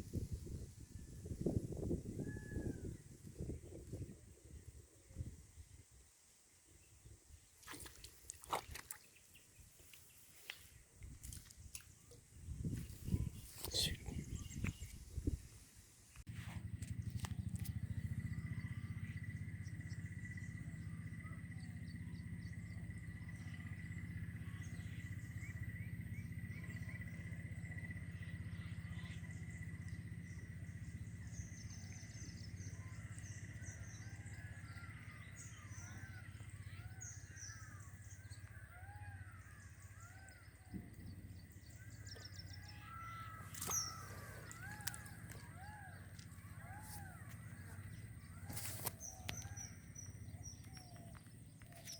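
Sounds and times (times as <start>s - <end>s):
birds calling: 7.6s - 15.5s, 16.9s - 51.9s
steady low rumble: 11.0s - 38.6s.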